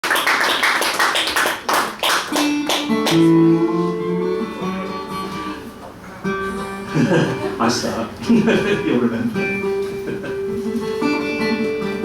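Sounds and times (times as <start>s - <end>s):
applause: 0.0s - 3.3s
guitar plucked: 2.3s - 12.0s.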